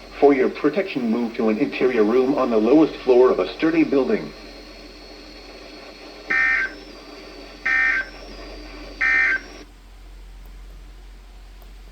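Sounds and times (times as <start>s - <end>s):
radio hiss: 0.0s - 9.7s
warbling digital data tones: 0.1s - 9.7s.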